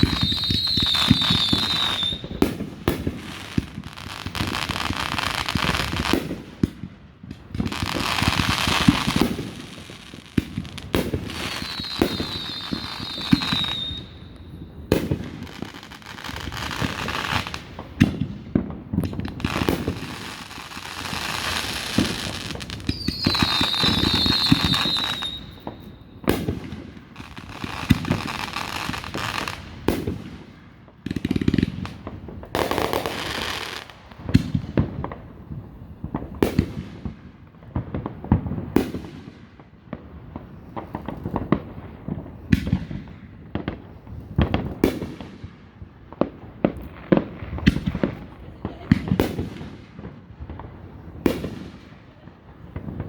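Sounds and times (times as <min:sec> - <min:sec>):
firework whistle: 0:00.0 - 0:02.6, 0:11.0 - 0:18.2, 0:19.5 - 0:26.6
fireworks booming: 0:00.0 - 0:53.0
fireworks crackling: 0:00.0 - 0:53.0.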